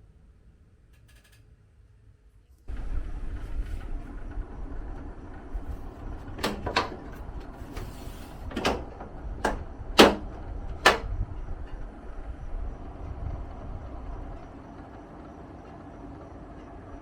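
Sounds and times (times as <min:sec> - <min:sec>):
low steady rumble: 0:00.0 - 0:17.0
sharp knocks: 0:08.6 - 0:11.1.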